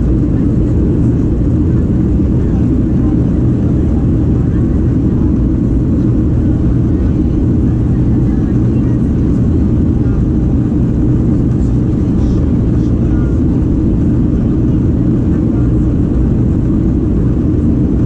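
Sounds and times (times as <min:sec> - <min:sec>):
aircraft cabin rumble: 0:00.0 - 0:18.0.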